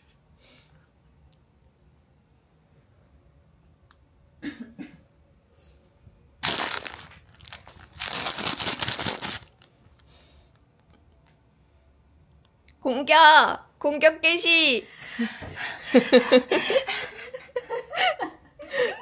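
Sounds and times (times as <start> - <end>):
plastic wrapping crinkling and tearing: 6.4 - 10.1.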